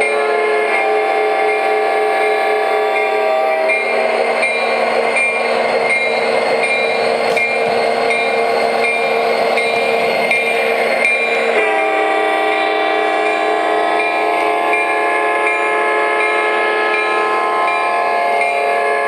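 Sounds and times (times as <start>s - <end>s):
model train horns chord: 0.0s - 4.1s, 11.2s - 19.0s.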